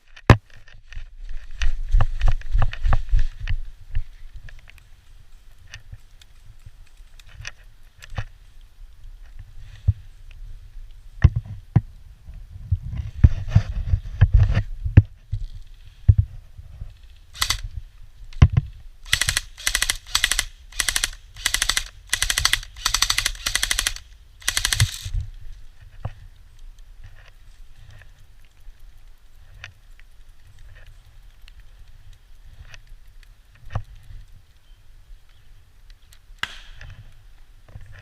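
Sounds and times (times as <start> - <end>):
airsoft guns firing: 19.1 - 25.1.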